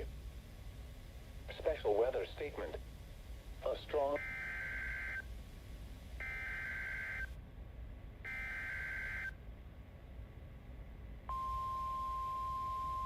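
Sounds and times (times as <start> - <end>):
steady warning alarm tone: 4.2 - 5.2, 6.2 - 7.3, 8.3 - 9.4, 11.3 - 13.0.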